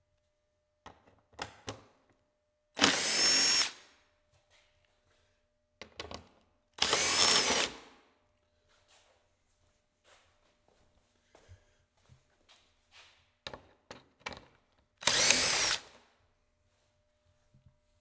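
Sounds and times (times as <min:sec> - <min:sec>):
rotary tool whining: 0:02.8 - 0:03.8, 0:06.8 - 0:07.8, 0:15.0 - 0:15.9.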